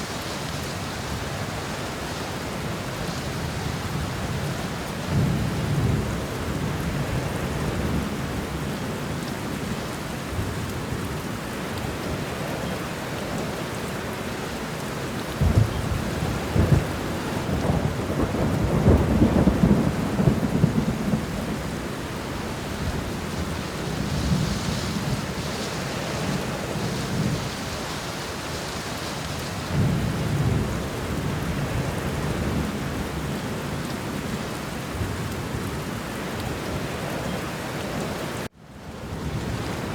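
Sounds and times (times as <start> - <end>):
steady rain: 0.0 - 39.9
thunder clap and rumble: 15.3 - 27.6, 29.7 - 33.4.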